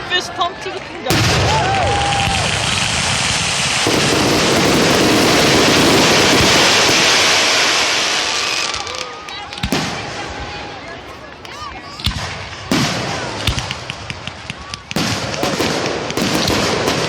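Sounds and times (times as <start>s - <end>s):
fireworks bursting: 1.1s - 17.0s.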